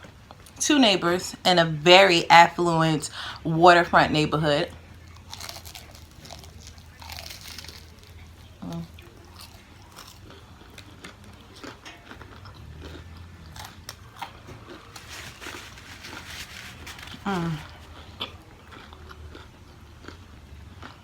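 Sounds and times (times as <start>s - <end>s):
crunchy chewing: 4.7s - 21.0s.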